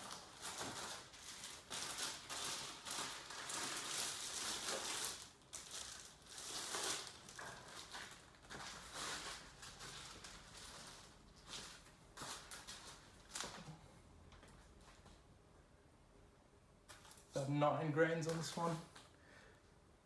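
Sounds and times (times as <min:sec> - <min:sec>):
rustling and crinkling packaging: 0:00.0 - 0:15.2, 0:16.9 - 0:17.5, 0:18.1 - 0:19.1.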